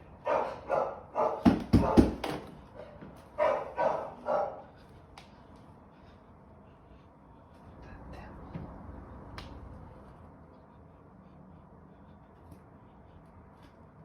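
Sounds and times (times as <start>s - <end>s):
dogs barking: 0.1s - 4.9s.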